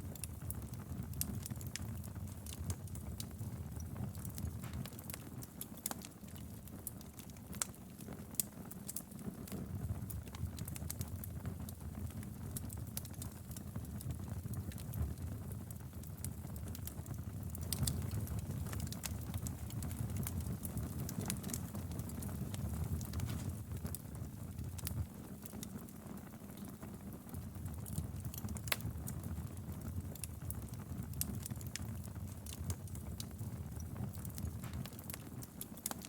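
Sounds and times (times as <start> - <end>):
firewood crackling and popping: 0.0 - 36.0
fire flames rumbling: 9.6 - 36.0.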